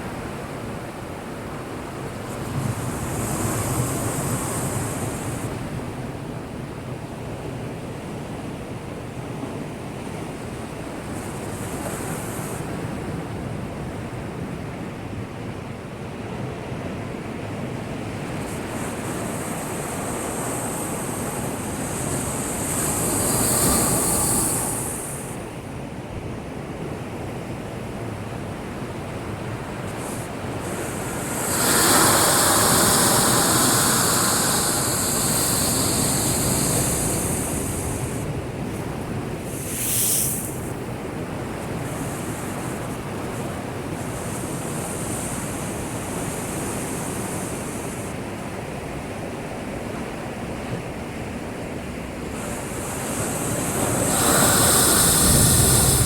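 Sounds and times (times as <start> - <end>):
waves breaking and crashing: 17.4 - 25.8, 27.8 - 48.2, 50.9 - 56.0.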